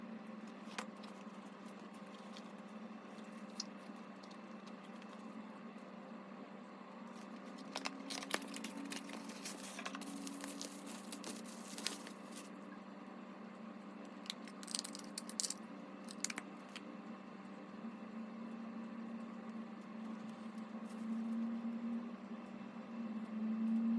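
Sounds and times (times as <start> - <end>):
low electrical hum: 0.0 - 23.9
packaging rustling and crinkling: 0.5 - 5.4, 7.1 - 12.5.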